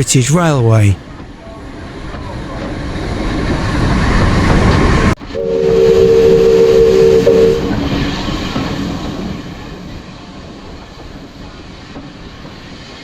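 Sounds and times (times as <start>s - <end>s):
steam train running: 0.1s - 13.0s
steam locomotive whistle blast: 5.2s - 9.3s.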